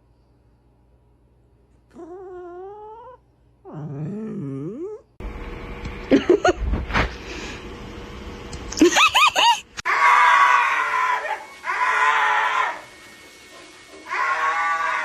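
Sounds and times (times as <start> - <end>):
dog yelping and screaming: 9.8 - 12.9, 14.0 - 15.0.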